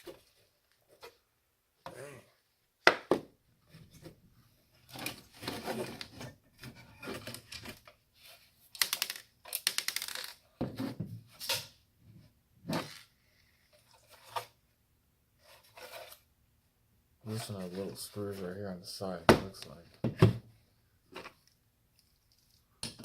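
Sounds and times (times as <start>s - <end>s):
device parts clattering and clicking: 8.8s - 10.5s.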